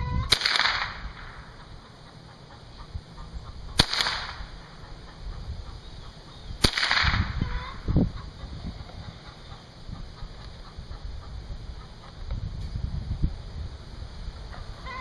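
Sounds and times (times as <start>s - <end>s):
rifle shots cracking: 0.3s - 1.4s, 3.8s - 4.5s, 6.6s - 7.3s.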